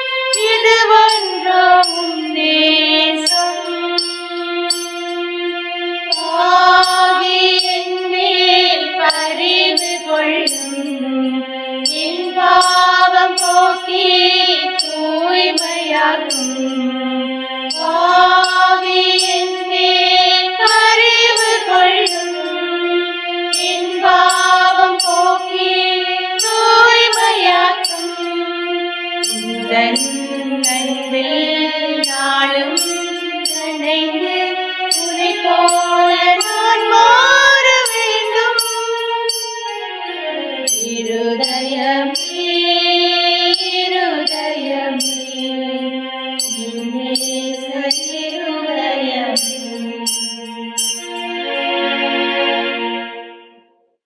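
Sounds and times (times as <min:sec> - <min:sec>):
gliding devotional melody: 0:00.0 - 0:53.6
light high percussion ticks: 0:03.2 - 0:05.2, 0:06.1 - 0:07.8, 0:09.0 - 0:10.9, 0:11.9 - 0:13.9, 0:14.7 - 0:16.7, 0:17.7 - 0:19.5, 0:23.6 - 0:25.4, 0:26.4 - 0:28.2, 0:29.2 - 0:31.2, 0:32.0 - 0:33.8, 0:34.9 - 0:36.8, 0:37.8 - 0:39.8, 0:40.7 - 0:42.4, 0:43.5 - 0:45.5, 0:46.4 - 0:48.4, 0:49.4 - 0:51.3.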